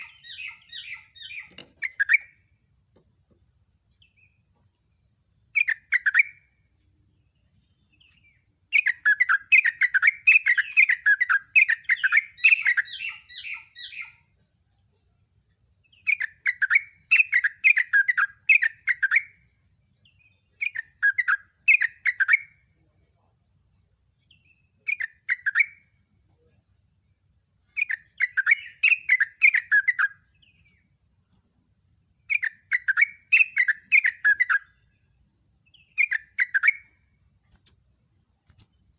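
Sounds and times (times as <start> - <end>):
bird chattering song: 0.0 - 2.4, 5.6 - 6.5, 7.4 - 14.3, 15.9 - 22.7, 24.2 - 26.0, 27.7 - 30.9, 32.2 - 37.7.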